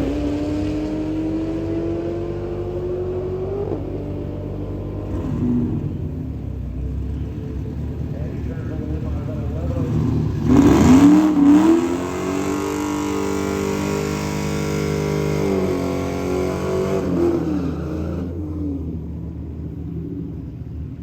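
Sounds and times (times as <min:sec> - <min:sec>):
car engine revving hard: 0:00.0 - 0:06.4, 0:09.3 - 0:19.0.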